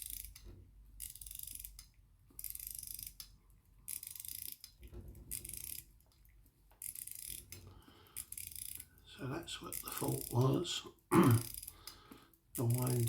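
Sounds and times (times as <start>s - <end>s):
watch winding ratchet clicks: 0.0s - 13.0s.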